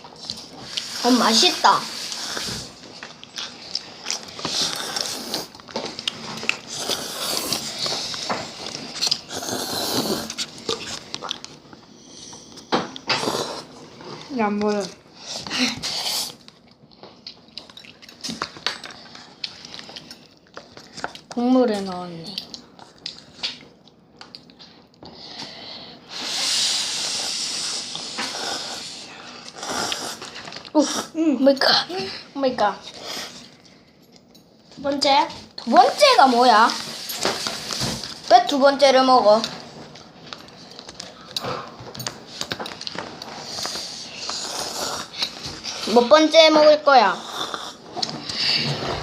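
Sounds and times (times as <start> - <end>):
slurping noodles: 0.2 - 11.4, 13.1 - 14.1, 26.1 - 31.2, 43.3 - 46.0, 47.1 - 49.0
chewing: 1.9 - 15.0, 15.8 - 21.4, 27.9 - 31.1
airy hiss from mouth: 26.1 - 30.2.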